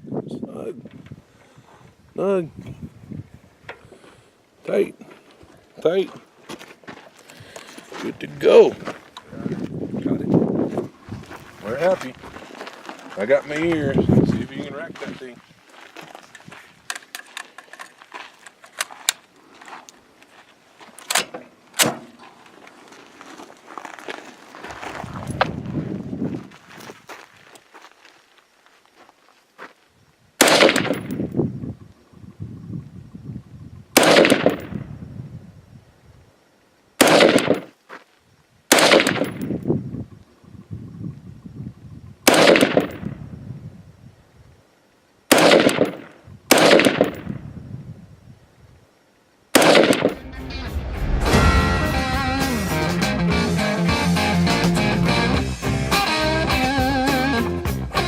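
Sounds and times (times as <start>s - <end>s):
rifle shots with echo: 30.4s - 31.2s, 34.0s - 34.8s, 37.0s - 37.7s, 38.7s - 39.4s, 42.3s - 43.0s, 45.3s - 47.3s, 49.6s - 50.4s.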